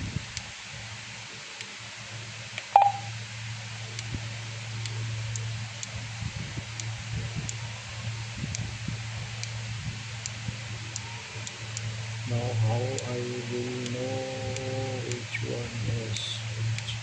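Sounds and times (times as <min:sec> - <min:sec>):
low hum: 0:02.6 - 0:05.8
radio key beep: 0:02.7 - 0:03.1.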